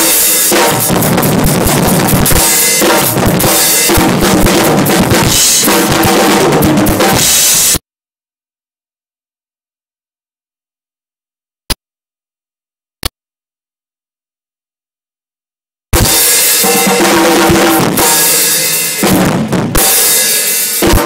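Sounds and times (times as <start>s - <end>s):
drum kit played hard: 0.0s - 7.8s, 15.9s - 21.0s.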